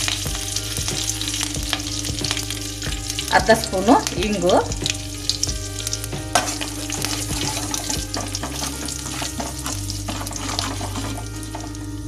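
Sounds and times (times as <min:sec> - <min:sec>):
spices sizzling in hot oil: 0:00.0 - 0:12.0
spoon stirring: 0:06.3 - 0:11.8.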